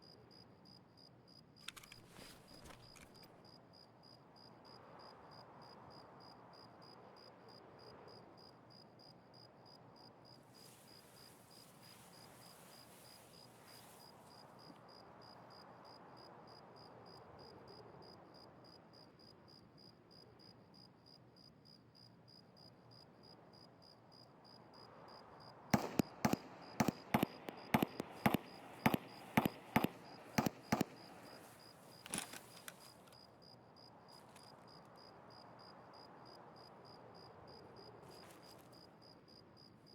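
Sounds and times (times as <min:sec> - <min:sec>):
crickets chirping: 0:00.0 - 0:39.9
pistol shots: 0:25.8 - 0:31.6.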